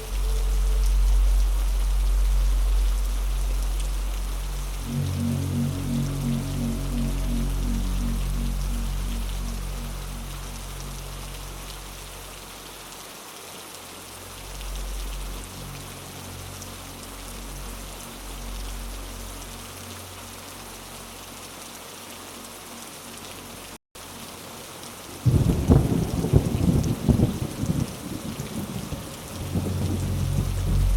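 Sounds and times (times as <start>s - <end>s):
low steady drone: 0.0s - 12.6s, 14.2s - 21.5s, 29.3s - 30.9s
heavy rain hissing: 0.0s - 30.9s
thunder rumble: 25.2s - 30.9s.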